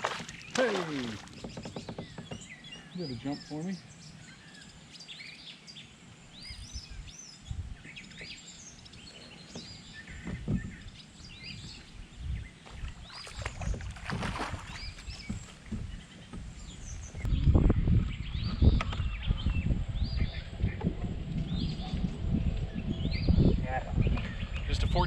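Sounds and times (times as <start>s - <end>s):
water splashing: 0.0s - 1.5s, 12.7s - 16.1s
knocks against a kayak hull: 0.0s - 2.6s, 9.5s - 10.9s
songbirds chirping: 0.0s - 25.0s.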